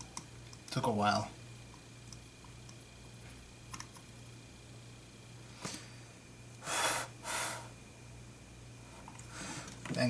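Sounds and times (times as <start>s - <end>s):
low steady hum: 0.0s - 10.0s
puffs of breath: 6.6s - 7.8s, 9.2s - 9.8s.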